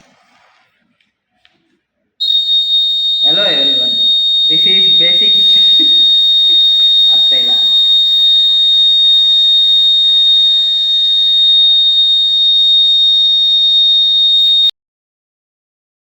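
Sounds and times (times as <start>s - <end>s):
high-pitched alarm buzzer: 2.2s - 14.7s.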